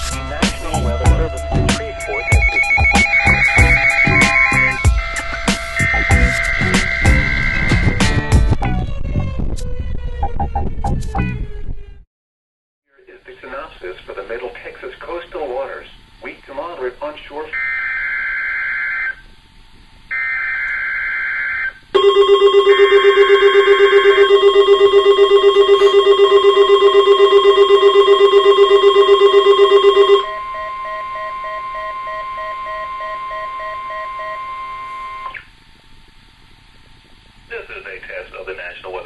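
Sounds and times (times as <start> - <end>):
buzzy digital data bursts: 0.0 - 8.4
steady warning alarm tone: 0.3 - 8.4, 17.5 - 19.2, 20.1 - 35.5
pulsing alarm: 0.9 - 8.4, 17.5 - 19.2, 20.1 - 35.5.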